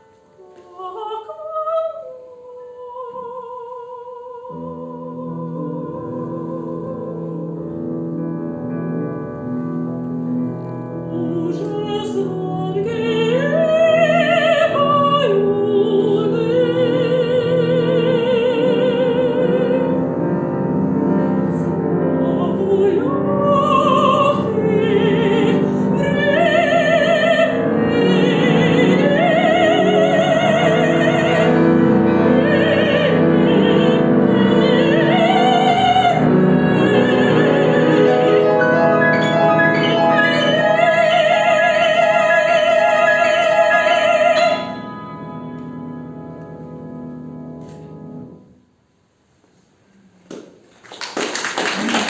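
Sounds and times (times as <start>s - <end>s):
piano accompaniment: 4.5s - 48.6s
operatic solo singing: 22.2s - 44.8s.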